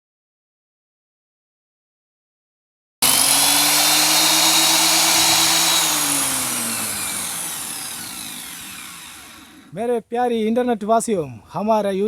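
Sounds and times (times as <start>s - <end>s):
power tool motor whining: 3.0s - 9.7s.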